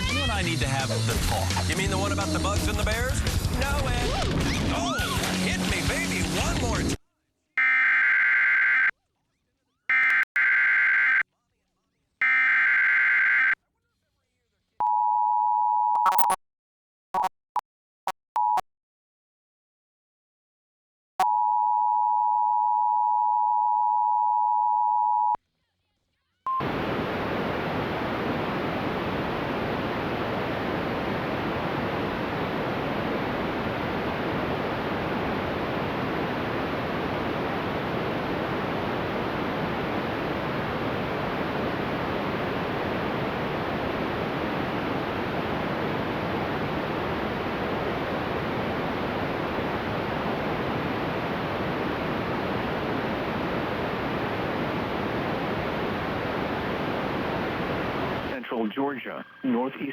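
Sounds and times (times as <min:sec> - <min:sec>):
static hiss: 0:26.6 - 0:59.9.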